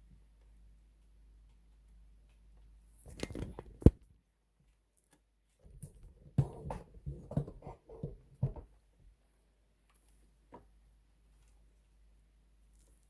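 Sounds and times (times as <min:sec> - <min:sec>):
small knocks and taps: 0:05.6 - 0:08.8.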